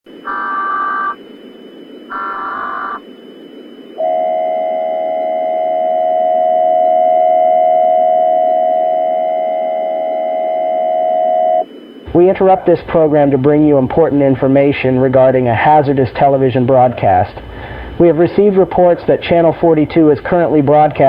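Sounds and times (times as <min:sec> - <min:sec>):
data-header tone bursts: 0:00.1 - 0:13.8
low static hiss: 0:00.1 - 0:21.0.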